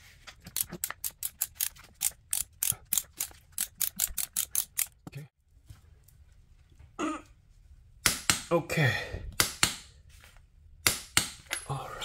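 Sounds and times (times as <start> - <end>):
hand ratchet clicking: 0.5 - 5.0.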